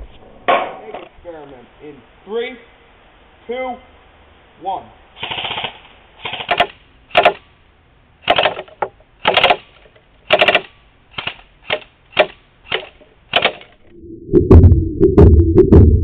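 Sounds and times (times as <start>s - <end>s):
airsoft rifle shots: 5.2s - 7.5s, 8.2s - 13.8s
music with low beat: 14.3s - 16.0s.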